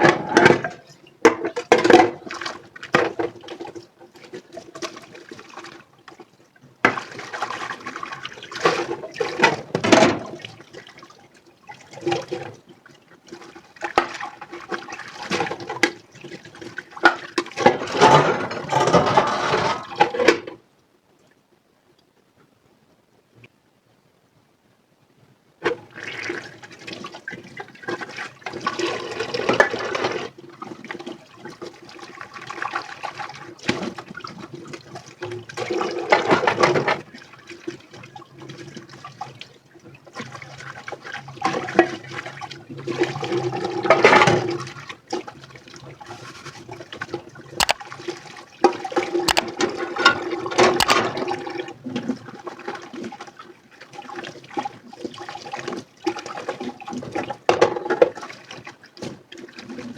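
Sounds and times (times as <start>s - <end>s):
water splashing in sink: 40.2s - 58.8s.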